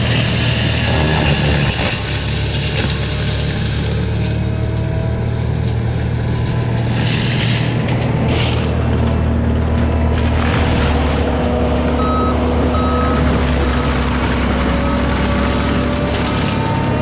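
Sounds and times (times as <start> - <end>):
mulching machine engine running: 0.0 - 17.0.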